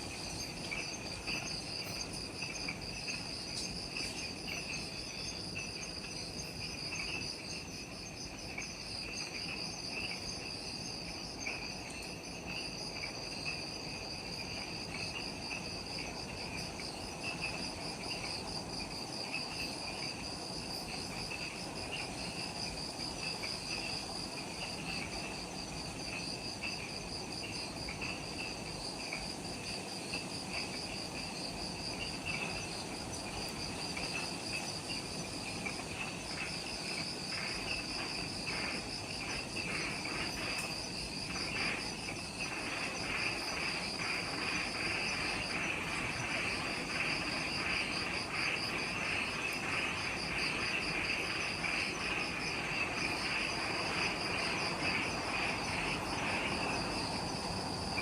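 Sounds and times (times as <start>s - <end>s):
insects chirring: 0.0s - 58.0s.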